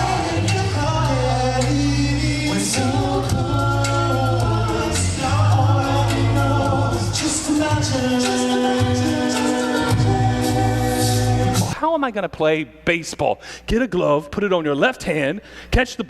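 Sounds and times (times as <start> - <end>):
group singing sustained notes: 0.0 - 11.7
steady bass line: 0.0 - 11.8.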